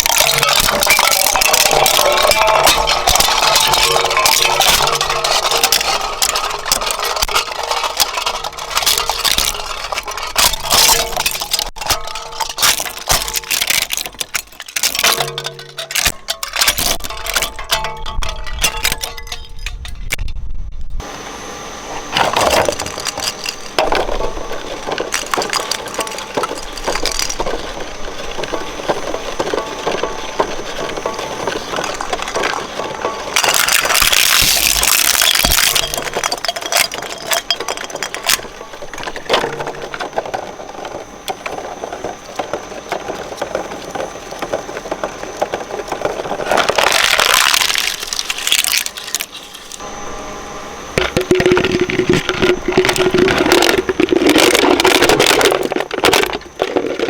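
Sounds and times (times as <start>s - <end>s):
shredder crushing and cracking: 0.0s - 20.2s, 22.1s - 49.8s, 51.0s - 57.0s.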